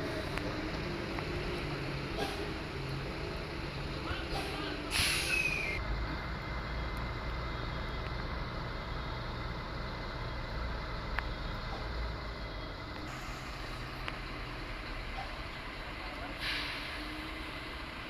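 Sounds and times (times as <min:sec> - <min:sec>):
diesel engine idling: 0:00.0 - 0:18.0.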